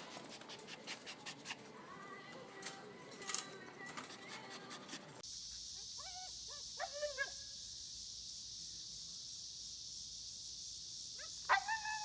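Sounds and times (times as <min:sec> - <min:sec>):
steady hiss: 0:05.2 - 0:12.0.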